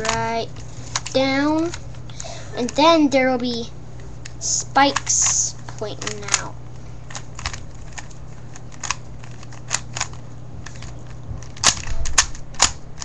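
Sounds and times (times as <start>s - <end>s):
steady low hum: 0.0s - 13.0s
puzzle cube clicking: 4.2s - 6.5s, 7.1s - 13.0s.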